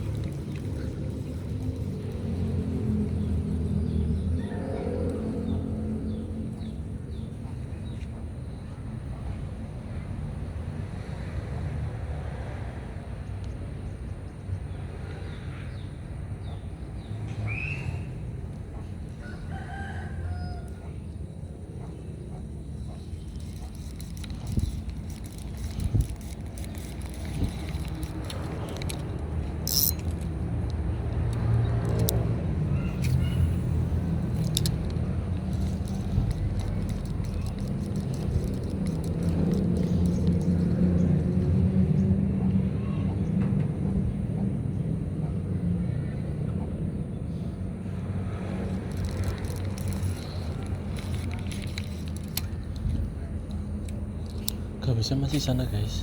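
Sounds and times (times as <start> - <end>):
engine humming: 0.0 - 7.0, 22.4 - 56.0
low outdoor rumble: 0.0 - 10.7, 18.5 - 56.0
metallic jingling: 23.2 - 30.6, 33.0 - 40.7, 48.7 - 53.0
clicks: 23.3 - 32.3.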